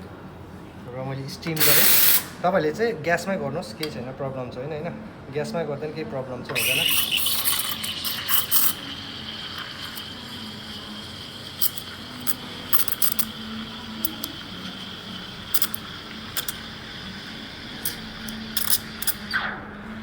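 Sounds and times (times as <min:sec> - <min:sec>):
steam wand hissing: 0:01.6 - 0:02.4, 0:06.6 - 0:19.4.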